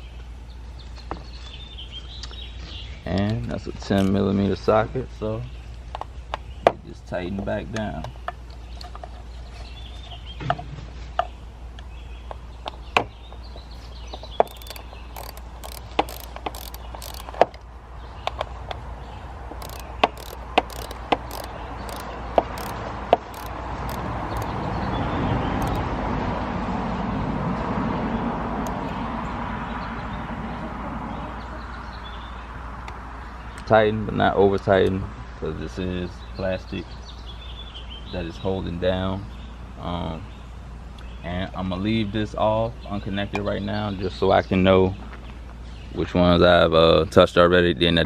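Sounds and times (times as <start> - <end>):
ratchet clicking: 14.4 - 17.6, 19.6 - 24.7, 25.6 - 25.8.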